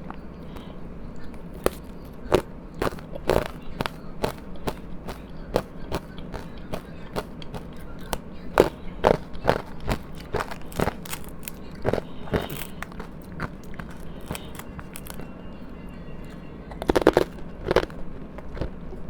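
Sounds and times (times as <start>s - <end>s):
chewing crunchy ice: 0.0s - 19.0s.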